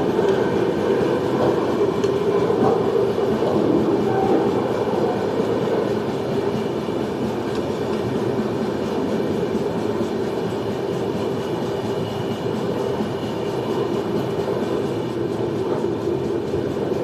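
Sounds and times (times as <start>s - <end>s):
train wheels rumbling on track: 0.0s - 17.0s.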